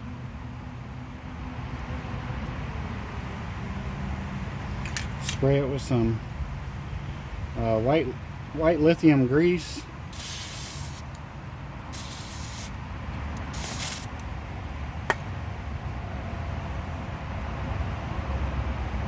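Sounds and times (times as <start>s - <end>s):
aerosol can spraying hiss: 10.1s - 11.2s, 11.9s - 12.8s, 13.4s - 14.2s.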